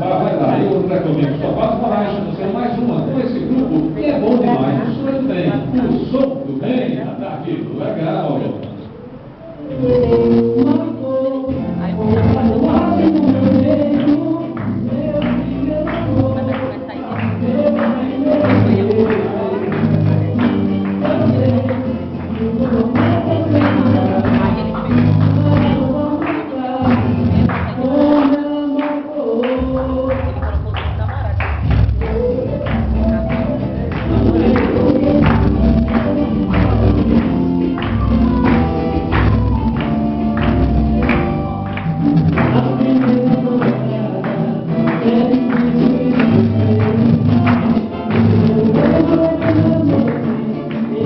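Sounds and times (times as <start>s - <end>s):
band playing with singing: 8.6s - 51.0s
tambourine beat: 31.7s - 44.0s.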